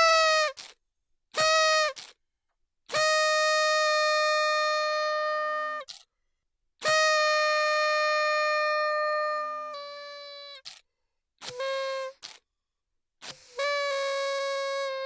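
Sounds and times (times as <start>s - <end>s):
party horn buzzing: 11.4s - 12.4s, 13.2s - 15.0s.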